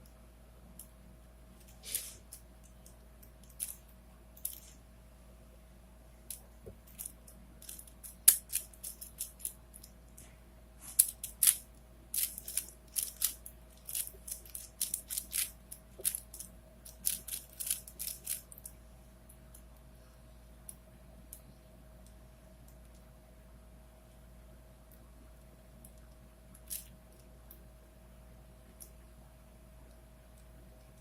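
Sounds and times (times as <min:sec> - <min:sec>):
plastic puzzle cube clicking: 0:12.2 - 0:18.7.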